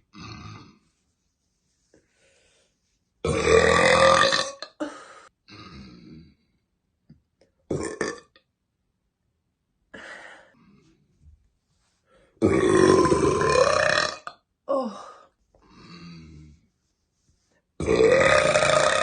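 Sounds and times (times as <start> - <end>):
woman burping: 3.3 - 6.1, 7.7 - 8.4, 12.4 - 14.9.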